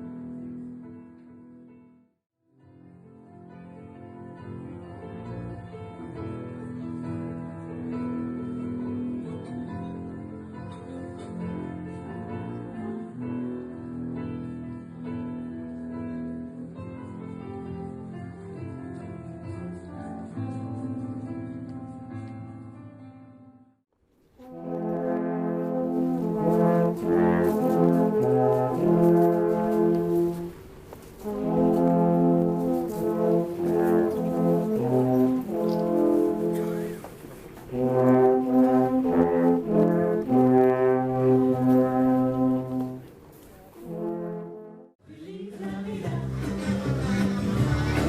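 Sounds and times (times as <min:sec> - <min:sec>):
brass ensemble playing held chords: 0:24.4 - 0:43.1, 0:43.8 - 0:44.9.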